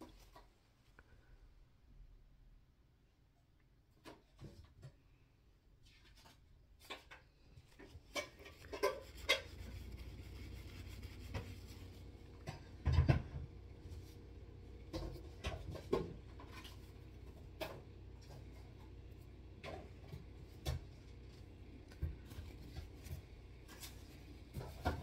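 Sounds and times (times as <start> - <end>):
rubbing on razor blade: 8.1 - 11.9.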